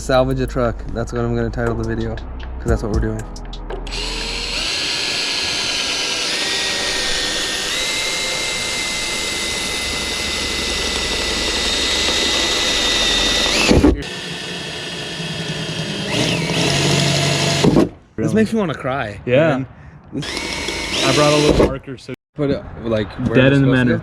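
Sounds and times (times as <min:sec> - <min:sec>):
power drill drilling sheet metal: 0:03.9 - 0:17.9, 0:20.2 - 0:21.8.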